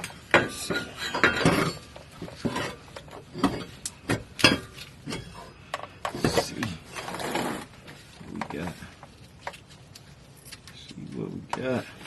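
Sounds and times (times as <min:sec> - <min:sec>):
metal tools clanking: 0:00.0 - 0:07.4.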